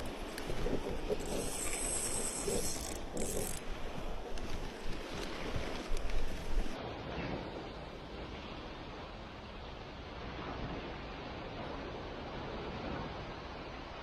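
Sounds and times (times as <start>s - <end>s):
fishing reel whirring and ratcheting: 0.0s - 3.8s.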